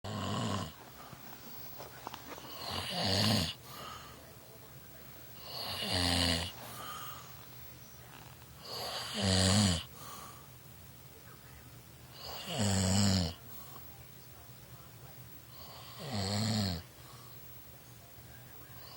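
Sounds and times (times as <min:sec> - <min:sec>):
man snoring: 0:00.1 - 0:00.8, 0:02.4 - 0:03.9, 0:05.4 - 0:07.2, 0:08.6 - 0:09.9, 0:12.1 - 0:13.4, 0:15.6 - 0:16.8
faint breath: 0:03.6 - 0:04.4, 0:06.5 - 0:07.8, 0:09.9 - 0:10.6, 0:16.9 - 0:17.6.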